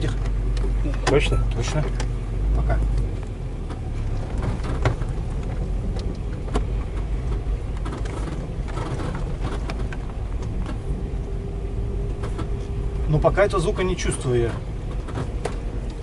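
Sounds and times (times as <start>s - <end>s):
vehicle driving on rough ground: 0.0s - 16.0s.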